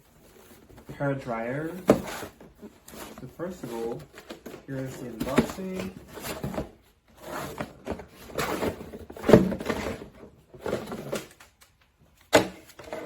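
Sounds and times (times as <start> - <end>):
cardboard packaging rustling: 0.0 - 13.0.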